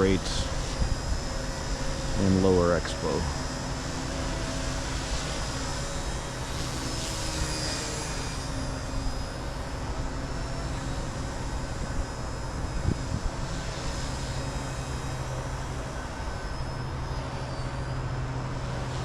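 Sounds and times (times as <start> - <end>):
micro helicopter whining: 0.0 - 19.0
wind on microphone: 11.8 - 13.6.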